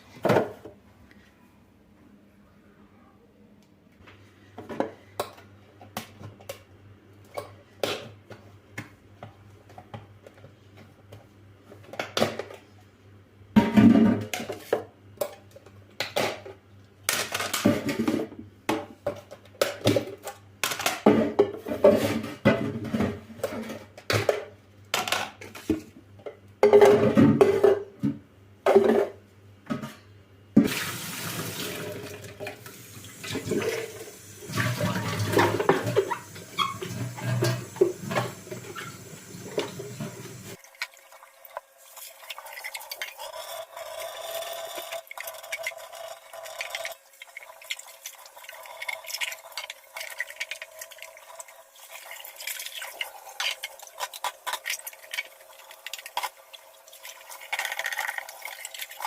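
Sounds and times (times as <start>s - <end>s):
tap running: 32.4s - 41.7s
dishes clinking at a sink: 33.3s - 38.9s.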